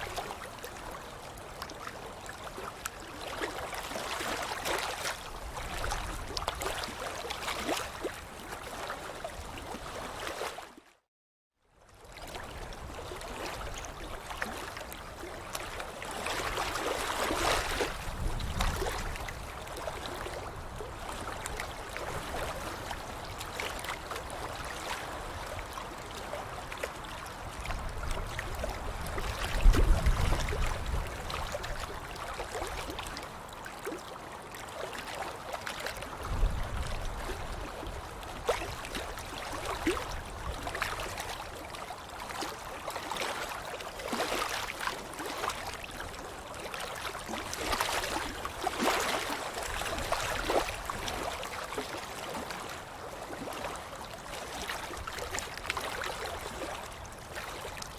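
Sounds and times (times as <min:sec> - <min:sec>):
water splashing: 0:02.6 - 0:08.9, 0:14.4 - 0:20.4, 0:38.4 - 0:53.8.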